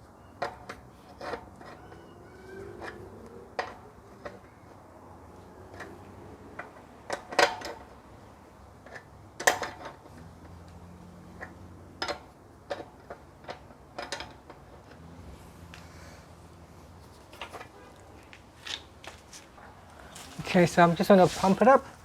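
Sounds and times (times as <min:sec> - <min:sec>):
spanner clicking on wheel nut: 0:08.8 - 0:10.8, 0:11.4 - 0:15.0.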